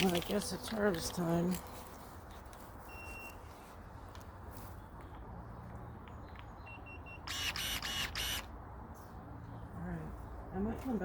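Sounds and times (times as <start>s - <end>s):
short beeps: 2.9s - 3.4s.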